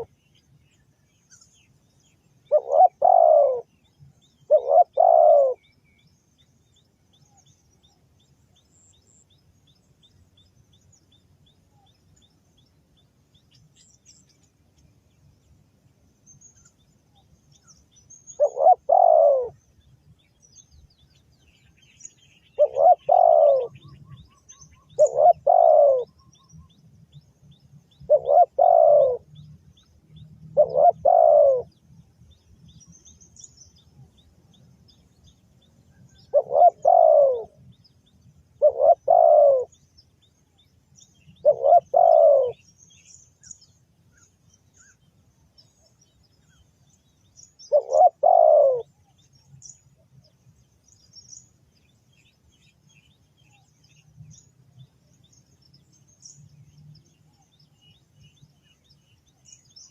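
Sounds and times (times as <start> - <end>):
small birds chirping: 0.0 - 59.9
dove cooing: 2.5 - 3.8, 4.4 - 5.7, 18.3 - 19.6, 22.6 - 24.3, 24.9 - 26.1, 28.1 - 29.4, 30.5 - 31.8, 36.1 - 37.7, 38.6 - 39.8, 41.4 - 42.6, 47.6 - 49.0.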